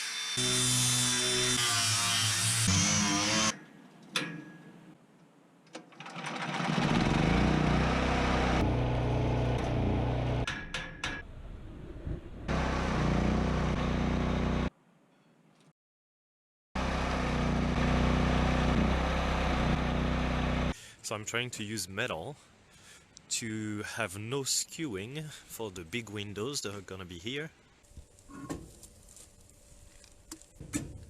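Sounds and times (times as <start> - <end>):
vehicle engine revving: 6.6 - 10.5.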